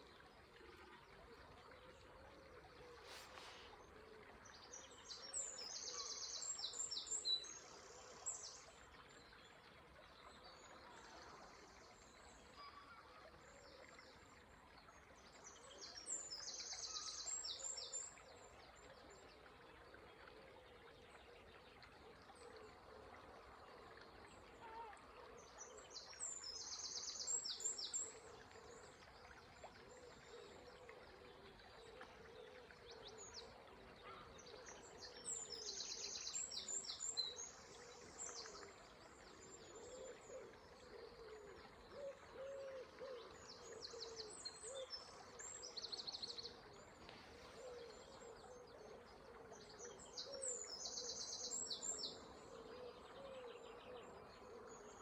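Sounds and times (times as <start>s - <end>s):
faint river rushing: 2.8s - 4.2s, 45.3s - 48.4s
bird cooing: 39.7s - 45.0s, 47.0s - 49.4s, 52.3s - 55.0s.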